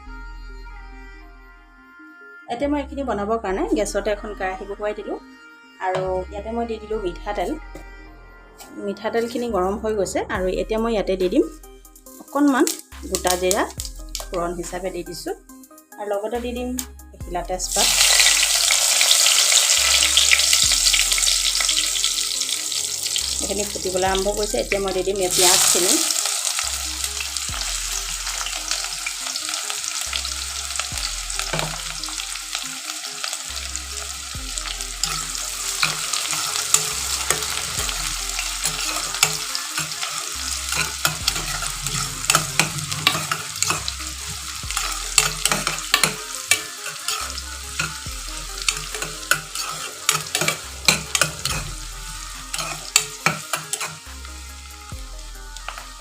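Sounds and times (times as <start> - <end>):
onions sizzling in oil: 17.6 - 56.0
spatula scraping pan: 35.0 - 54.1.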